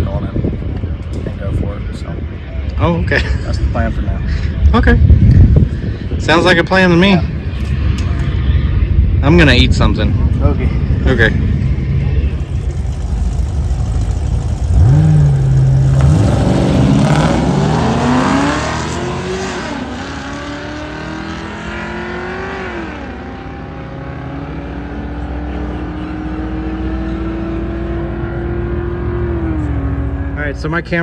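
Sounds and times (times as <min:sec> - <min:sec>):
car engine revving and accelerating: 0:12.2 - 0:30.7.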